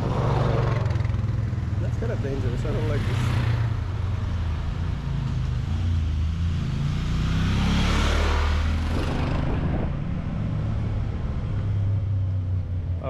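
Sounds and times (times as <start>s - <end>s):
vehicle passing by: 5.3s - 13.0s
steady low rumble: 8.9s - 13.0s.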